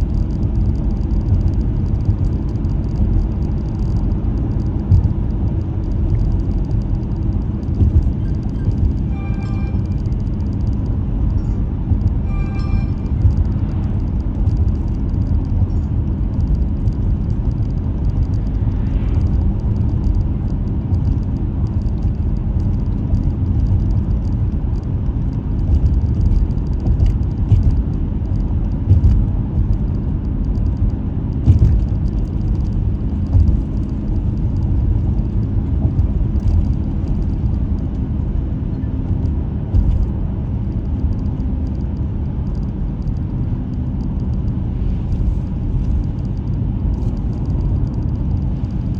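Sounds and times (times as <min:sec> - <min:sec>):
faint ticks: 0:00.0 - 0:38.0
car engine and tyre rumble: 0:00.0 - 0:48.9.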